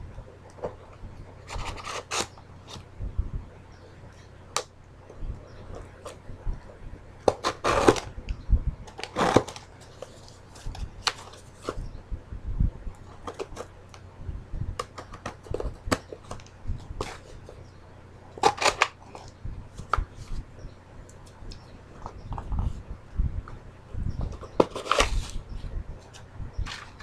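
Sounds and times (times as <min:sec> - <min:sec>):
electric fan hum: 0:00.0 - 0:27.0
packaging rustling and crinkling: 0:08.9 - 0:11.8, 0:24.2 - 0:25.5, 0:26.1 - 0:27.0
packaging clicks and taps: 0:14.8 - 0:17.2.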